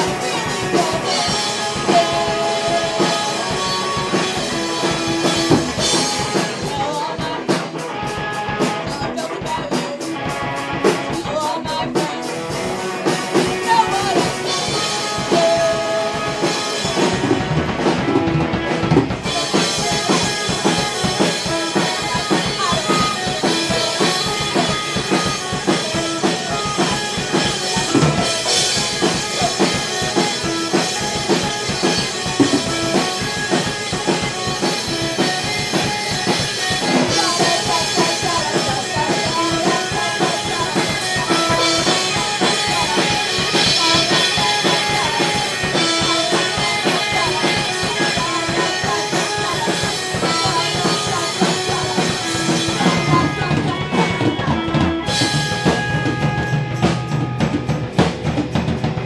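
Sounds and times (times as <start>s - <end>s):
fast drum hits: 0.0s - 7.4s, 12.7s - 59.0s
live rock band playing: 0.0s - 59.0s.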